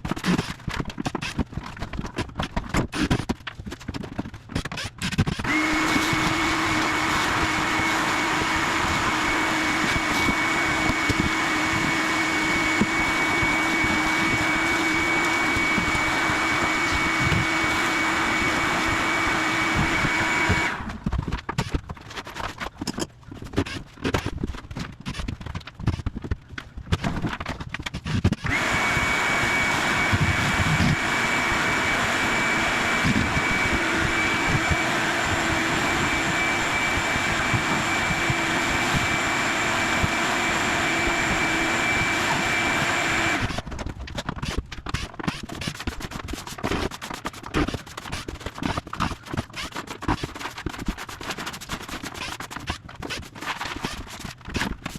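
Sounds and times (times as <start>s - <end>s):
machine with high whine: 5.1s - 21.7s, 28.4s - 43.8s.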